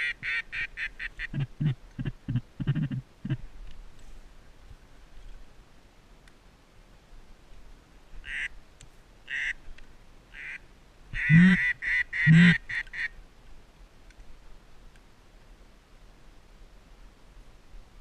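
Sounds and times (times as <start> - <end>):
duck quacking: 0.0 - 3.4, 9.3 - 9.6, 11.2 - 13.1.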